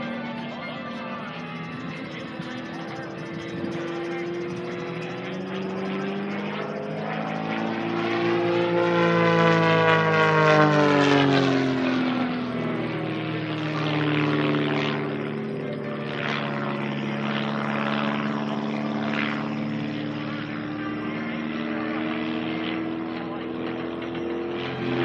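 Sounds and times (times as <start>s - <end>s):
propeller plane engine: 0.0s - 25.0s.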